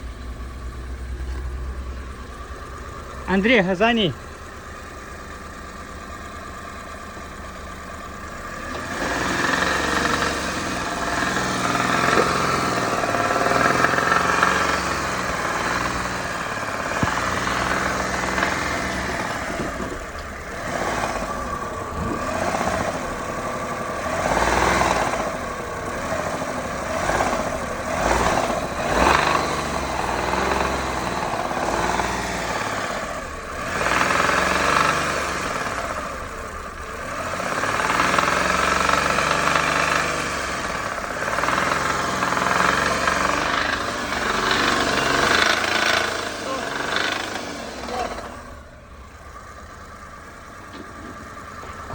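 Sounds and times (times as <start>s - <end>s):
engine revving: 0.0s - 51.9s.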